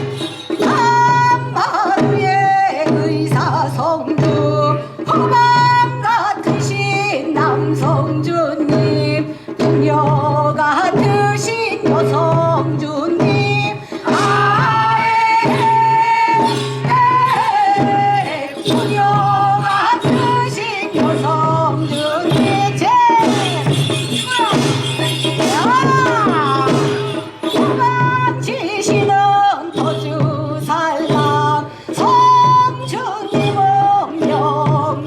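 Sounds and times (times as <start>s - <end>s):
steady drum beat: 0.0s - 35.0s.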